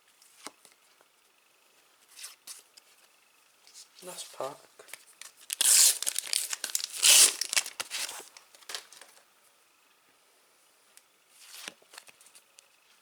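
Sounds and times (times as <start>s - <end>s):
foil wrapper crinkling: 4.9s - 9.2s.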